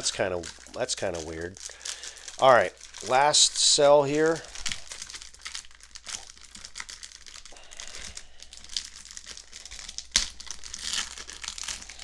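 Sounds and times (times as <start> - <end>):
plastic wrapper crinkling and tearing: 0.0 - 12.0.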